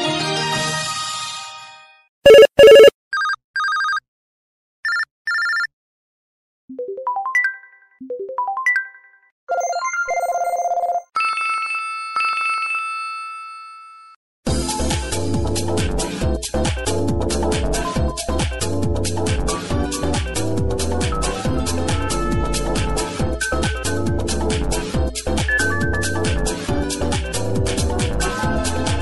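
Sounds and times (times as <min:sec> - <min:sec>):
electronic tones: 0:02.3 - 0:02.9
loud beeps: 0:02.3 - 0:02.9
rising arpeggios: 0:02.3 - 0:02.9
phone ringtone melody: 0:02.3 - 0:04.0, 0:04.9 - 0:05.7.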